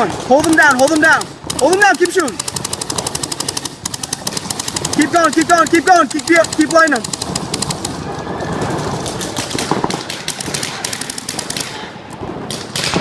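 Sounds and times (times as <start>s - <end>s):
paintball markers firing: 0.0s - 8.0s, 9.0s - 13.0s.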